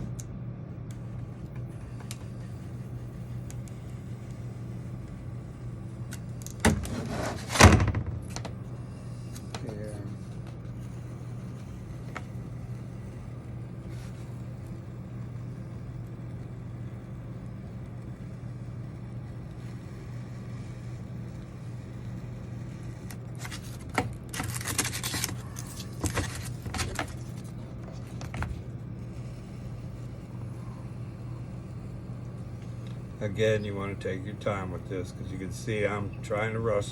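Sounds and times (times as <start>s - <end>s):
clicks and rustling scrapes: 6.1s - 8.6s, 23.0s - 28.6s
low hum: 25.3s - 36.9s.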